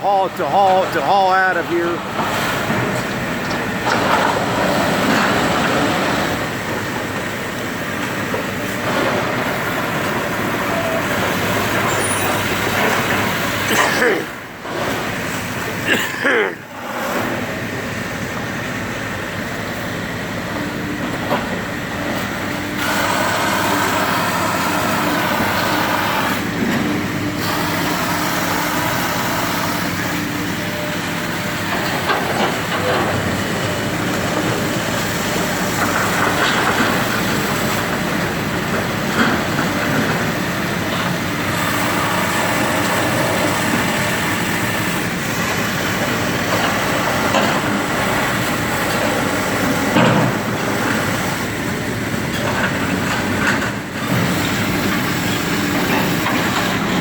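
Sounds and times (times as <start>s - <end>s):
diesel demolition machinery running: 0.0s - 57.0s.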